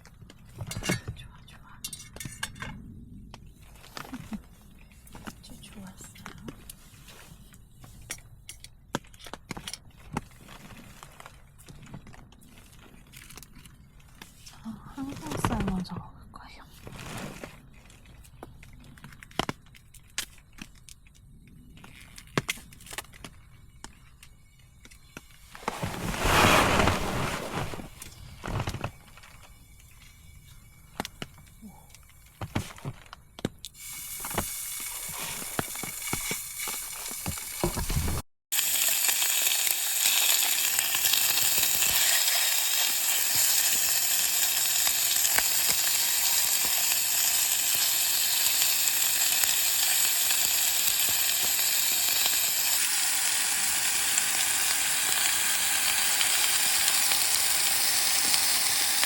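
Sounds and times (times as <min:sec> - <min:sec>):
meat sizzling in a pan: 0:33.8 - 0:59.0.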